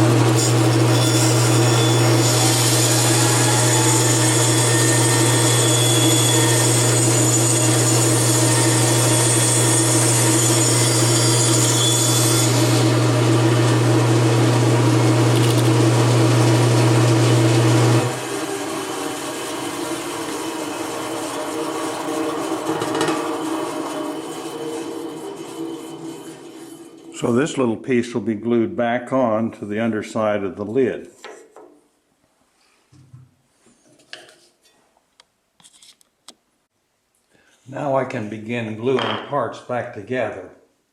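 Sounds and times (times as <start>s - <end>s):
saw blade cutting wood: 0.0s - 16.2s, 17.1s - 27.1s
bandsaw motor hum: 0.0s - 27.4s.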